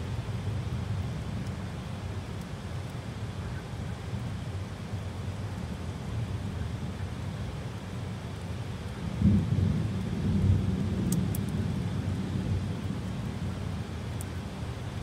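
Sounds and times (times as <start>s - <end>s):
heavy rain: 0.0s - 15.0s
thunder rumbling: 9.1s - 13.6s.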